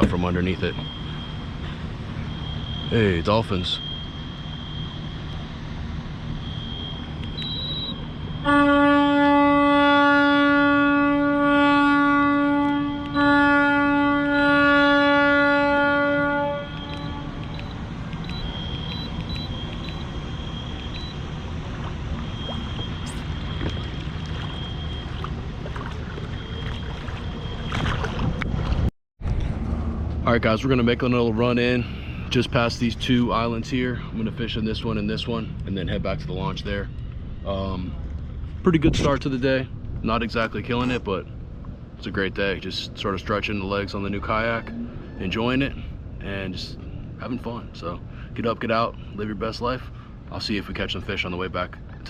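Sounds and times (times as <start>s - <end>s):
deep horn blasts: 3.8s - 35.0s.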